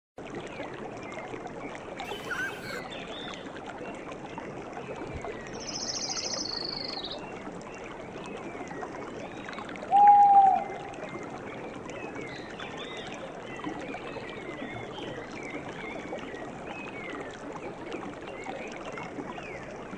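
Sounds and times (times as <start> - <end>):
birds calling: 2.0 - 2.8.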